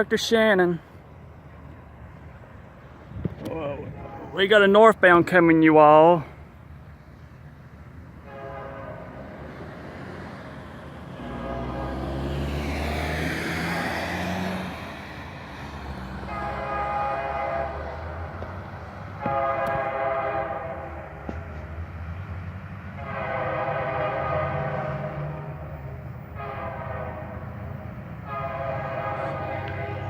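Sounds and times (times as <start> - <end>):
low locomotive rumble: 0.8 - 12.5, 14.7 - 30.0
train horn blasts: 8.2 - 9.4, 11.1 - 12.3, 16.2 - 18.2, 19.2 - 21.6, 22.9 - 25.7, 26.3 - 30.0.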